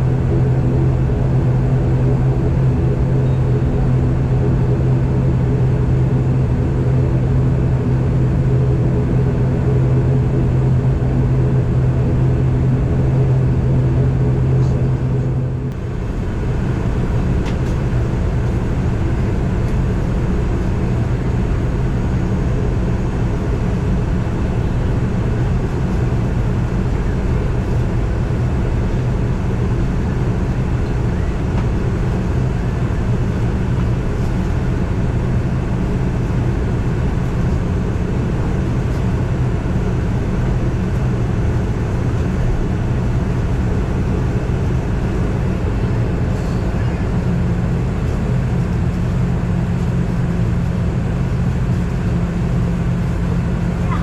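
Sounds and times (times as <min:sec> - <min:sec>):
airliner propeller engines droning: 0:00.0 - 0:54.0.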